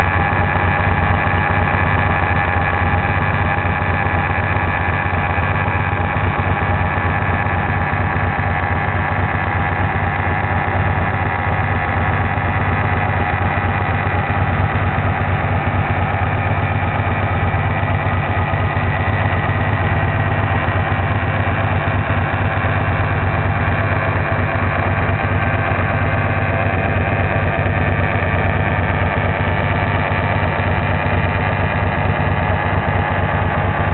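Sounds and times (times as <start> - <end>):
motorcycle engine idling: 0.0 - 33.9
odd engine noise: 0.0 - 33.9.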